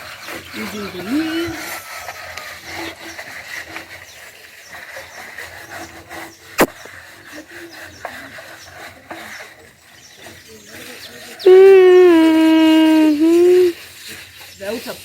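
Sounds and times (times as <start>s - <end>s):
leaves rubbing on clay pot: 0.0s - 15.0s.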